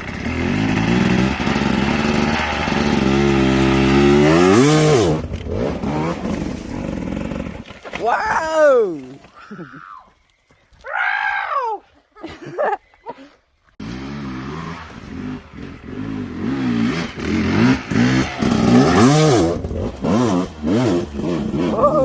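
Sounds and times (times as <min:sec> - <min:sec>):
off-road vehicle engine revving: 0:00.0 - 0:07.7, 0:13.8 - 0:22.0
loud arching cry: 0:08.0 - 0:10.1, 0:10.8 - 0:11.8, 0:21.5 - 0:22.0.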